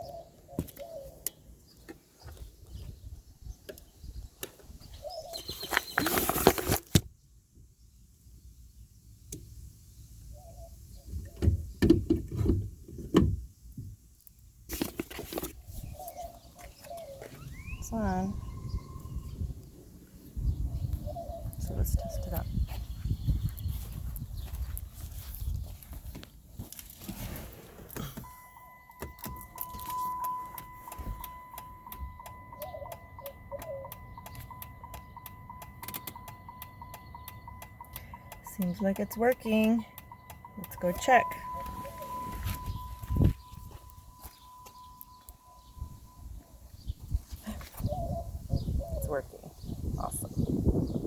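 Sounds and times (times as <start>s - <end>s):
turn signal ticking: 28.2s - 46.7s
high warning tone: 28.2s - 46.9s.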